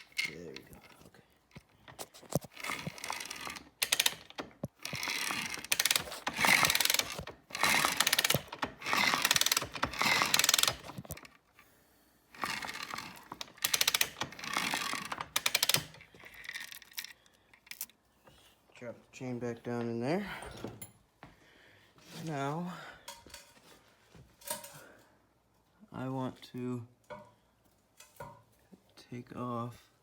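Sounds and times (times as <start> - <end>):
ratchet wrench clicking: 2.4 - 11.3, 12.4 - 17.9.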